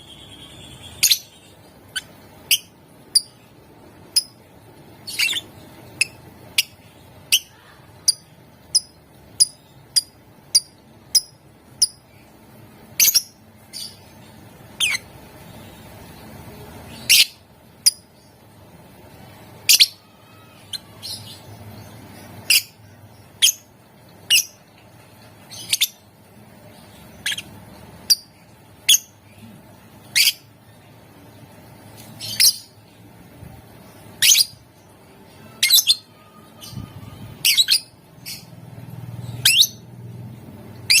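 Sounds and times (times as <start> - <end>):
bird high-pitched calls: 5.0 - 12.0.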